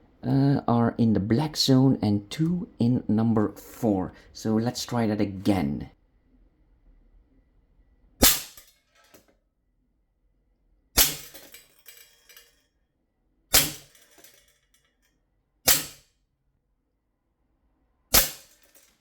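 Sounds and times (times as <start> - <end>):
air pistol pops: 8.2 - 8.6, 15.7 - 16.0, 18.1 - 18.5.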